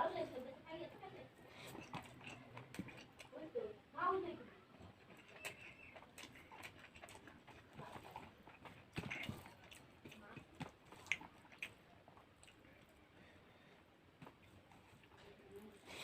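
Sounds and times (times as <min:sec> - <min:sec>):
person chewing food: 0:01.5 - 0:03.4, 0:04.7 - 0:13.0, 0:13.7 - 0:16.0
lip smacks and mouth clicks: 0:01.6 - 0:03.4, 0:04.9 - 0:12.8.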